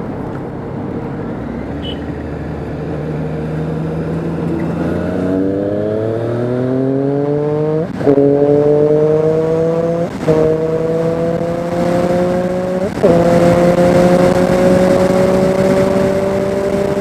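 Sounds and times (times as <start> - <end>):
motorcycle engine accelerating: 1.2 - 17.0.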